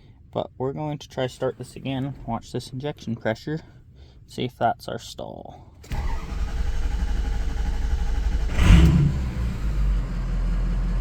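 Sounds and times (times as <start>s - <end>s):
diesel engine cranking on starter: 5.8s - 11.0s
diesel engine firing and running: 5.8s - 11.0s.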